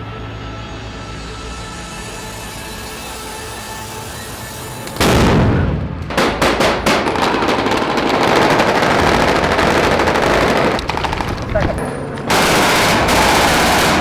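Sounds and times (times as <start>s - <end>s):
automatic gunfire: 5.0s - 14.0s.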